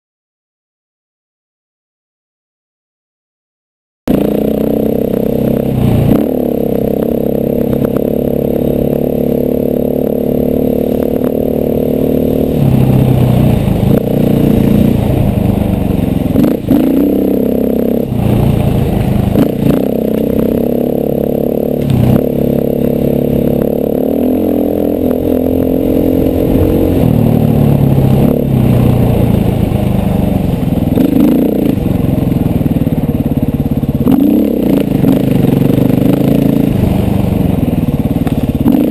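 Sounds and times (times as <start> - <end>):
dirt bike engine revving: 4.1 - 38.9.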